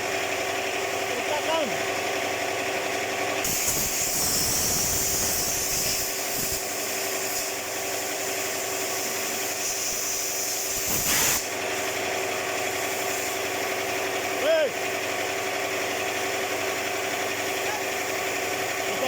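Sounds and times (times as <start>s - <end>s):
compressed air hissing: 3.5s - 11.6s.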